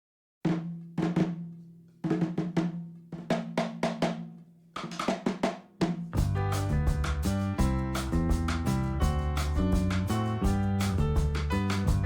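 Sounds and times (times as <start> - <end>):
drum hits with low ringing tones: 5.8 - 12.0
band with bass: 6.2 - 12.0.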